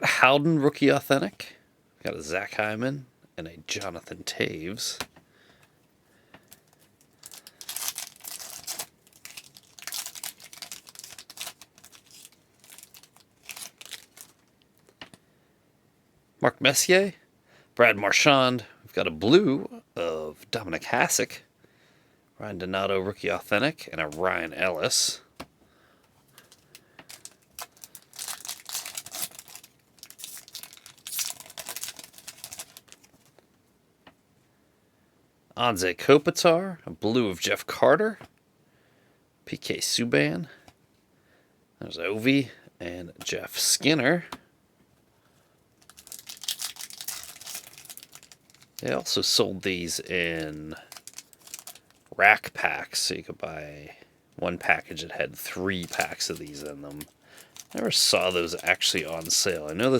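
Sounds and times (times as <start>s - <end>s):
plastic wrapper crinkling: 6.4s - 14.9s, 26.3s - 33.4s, 45.8s - 52.2s, 54.6s - 59.9s.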